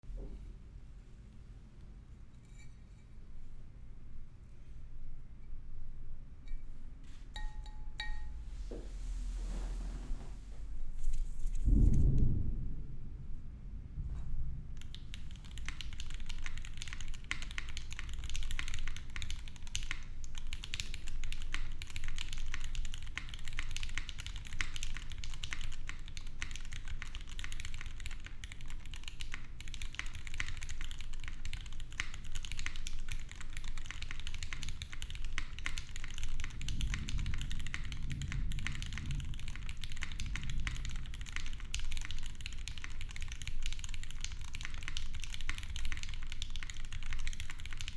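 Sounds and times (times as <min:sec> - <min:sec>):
low thunder rumble: 0:08.4 - 0:17.3, 0:35.1 - 0:43.6
fast keyboard typing: 0:14.8 - 0:47.9.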